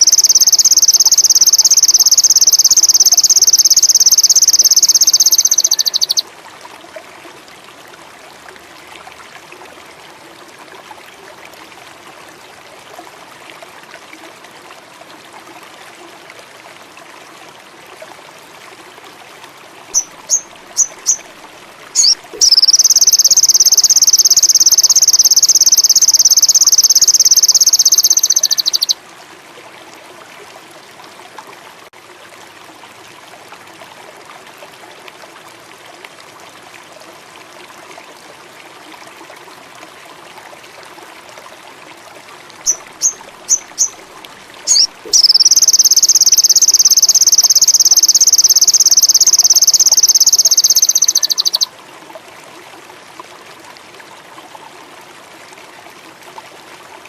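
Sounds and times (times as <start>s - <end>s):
bird chirps and trill: 0.0s - 6.2s, 20.0s - 21.2s, 22.0s - 29.0s, 42.7s - 44.0s, 44.7s - 51.7s
running water trickling: 0.0s - 57.0s.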